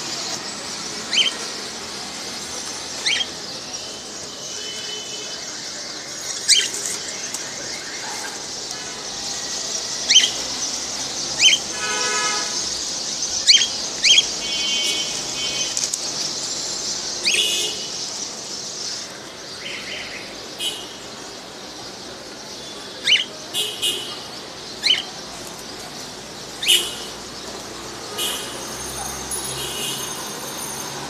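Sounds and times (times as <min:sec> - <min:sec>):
high-pitched bird chatter: 0:00.7 - 0:05.0, 0:05.8 - 0:11.8, 0:12.6 - 0:19.4, 0:22.9 - 0:27.6.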